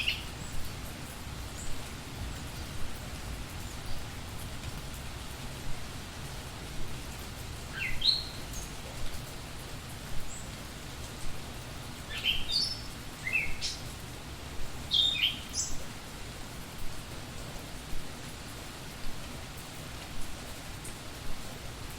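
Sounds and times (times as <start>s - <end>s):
songbird singing: 0.0s - 4.1s, 7.6s - 8.8s, 12.0s - 14.0s, 14.9s - 15.8s
rain hiss: 0.0s - 21.9s.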